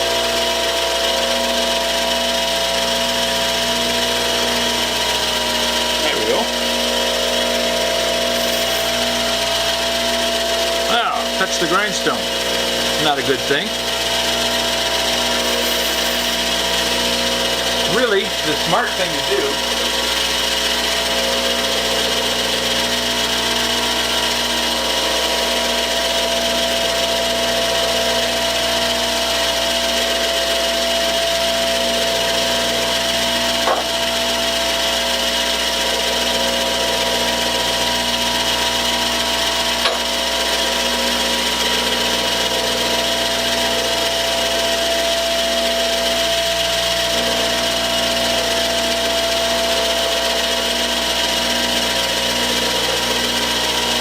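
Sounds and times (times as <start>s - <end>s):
grindstone grinding metal screw: 3.8s - 10.8s, 12.8s - 27.5s.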